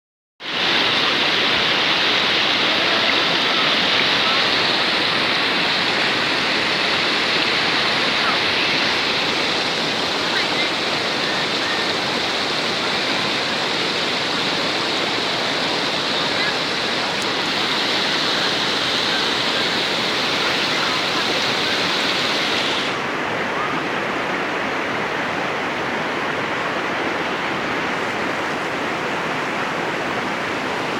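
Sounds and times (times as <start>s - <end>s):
waterfall rushing: 0.4s - 30.9s.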